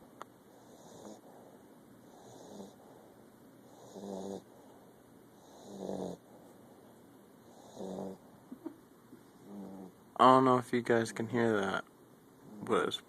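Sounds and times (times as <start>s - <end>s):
dog snoring: 0.5s - 4.7s, 5.3s - 6.3s, 7.4s - 8.2s, 9.4s - 10.0s.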